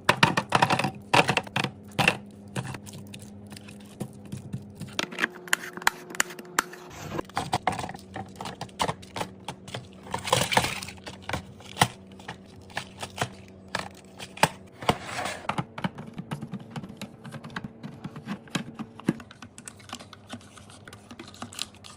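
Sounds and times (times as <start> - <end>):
food containers clattering: 4.0 - 16.8.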